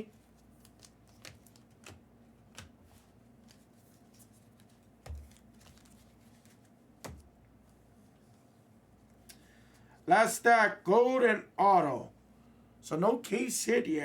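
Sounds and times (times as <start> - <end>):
cards clicking on a table: 0.6 - 2.8
cards tapping on a table: 5.0 - 5.4.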